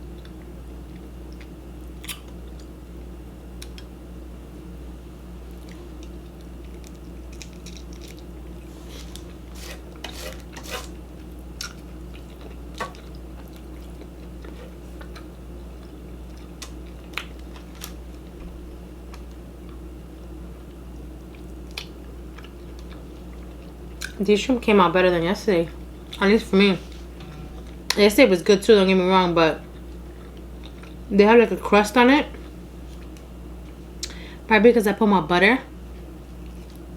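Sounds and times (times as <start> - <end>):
low electrical hum: 0.0 - 36.9
quiet chewing: 0.1 - 3.9, 5.4 - 18.4, 20.6 - 24.2, 29.6 - 31.1, 32.3 - 34.2, 35.9 - 36.9.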